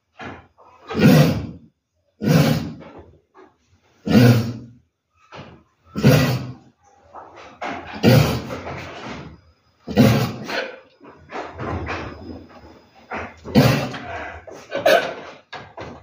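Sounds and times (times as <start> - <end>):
ewe coughing: 0.8 - 1.6, 2.2 - 3.0, 4.0 - 4.8, 5.9 - 6.8, 7.9 - 8.8, 9.8 - 10.9, 13.1 - 15.6.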